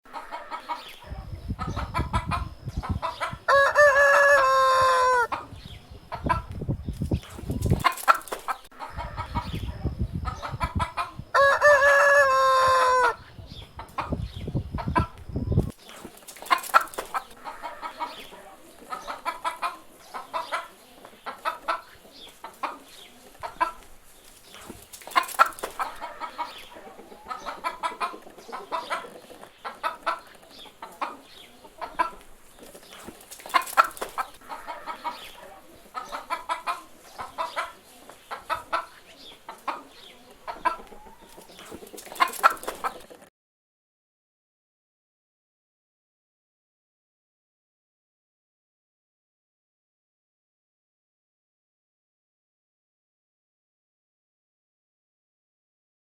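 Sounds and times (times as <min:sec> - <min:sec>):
chickens clucking: 0:00.1 - 0:43.3
rooster crowing: 0:03.4 - 0:05.3, 0:11.3 - 0:13.2, 0:34.5 - 0:35.2.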